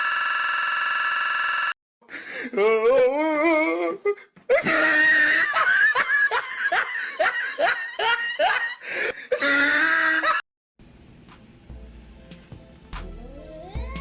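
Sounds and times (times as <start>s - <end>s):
person laughing hard: 4.5s - 10.4s.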